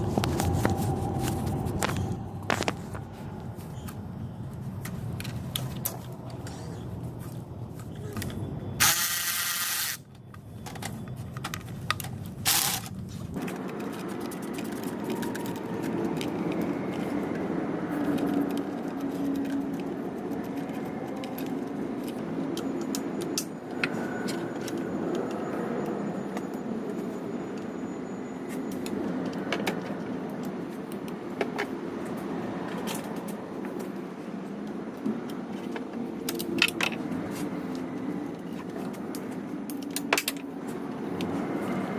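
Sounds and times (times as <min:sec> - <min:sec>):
low hum: 0:00.0 - 0:08.8.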